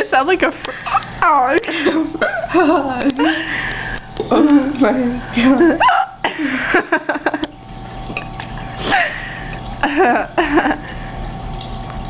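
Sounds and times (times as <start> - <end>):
woman hiccupping: 5.8 - 6.3
breathy laughter: 8.9 - 11.0.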